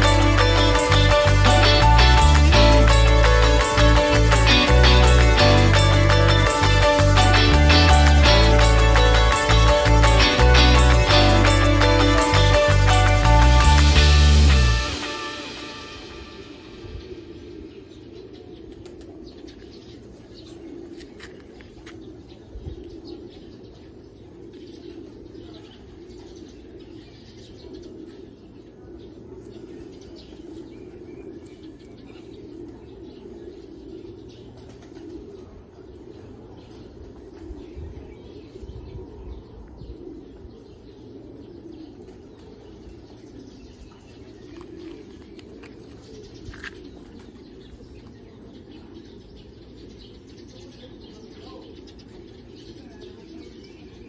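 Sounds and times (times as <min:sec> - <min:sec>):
pigeons cooing: 0:17.1 - 0:50.1.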